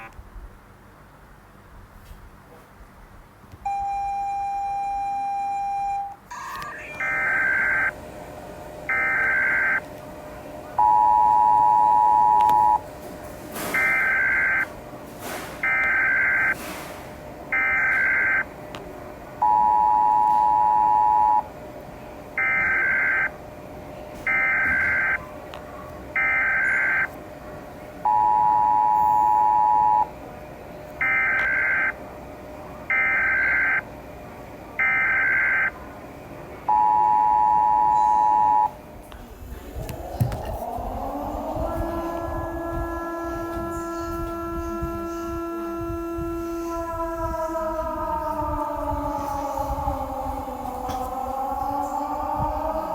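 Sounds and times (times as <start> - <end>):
two-tone attention signal: 3.7 - 8.0, 8.9 - 9.8, 10.8 - 12.8, 13.7 - 14.7, 15.6 - 16.6, 17.6 - 18.5, 19.4 - 21.5, 22.4 - 23.3, 24.3 - 25.2, 26.2 - 27.2, 28.1 - 30.1, 31.0 - 32.0, 32.9 - 33.9, 36.7 - 38.8.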